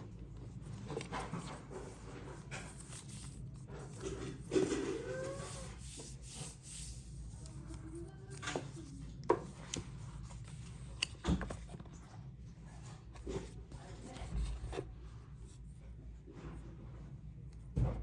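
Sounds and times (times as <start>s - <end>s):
cardboard and paper rubbing: 0.0s - 12.0s, 12.7s - 15.7s.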